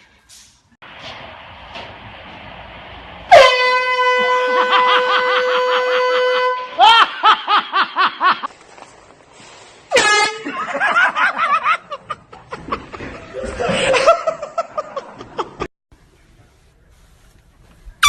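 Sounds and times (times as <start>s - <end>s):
air horn blasting: 3.3s - 6.8s, 9.9s - 10.6s
person laughing: 4.5s - 8.5s, 10.4s - 15.7s.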